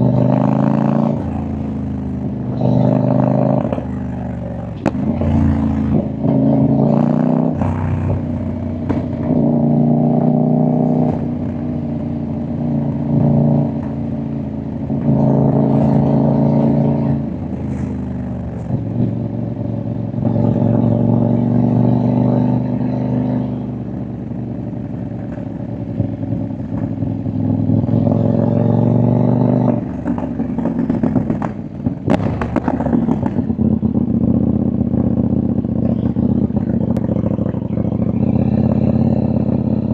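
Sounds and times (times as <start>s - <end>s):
motorcycle engine and exhaust: 0.0s - 39.9s
exhaust pops and crackles: 3.6s - 7.0s, 7.6s - 9.7s, 24.4s - 28.0s, 29.7s - 38.2s.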